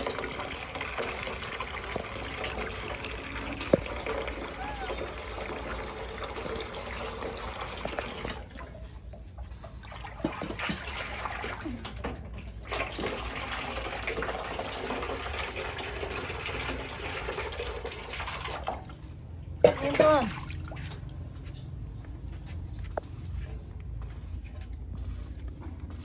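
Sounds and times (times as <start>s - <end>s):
water running and splashing: 0.0s - 8.9s, 9.6s - 12.0s, 12.6s - 18.9s.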